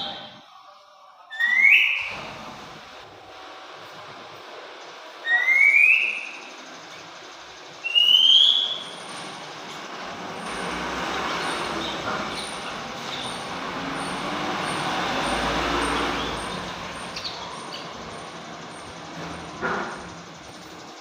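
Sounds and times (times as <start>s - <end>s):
faint bird chirps: 1.3s - 2.4s, 5.2s - 9.9s
vehicle passing by: 1.7s - 21.0s.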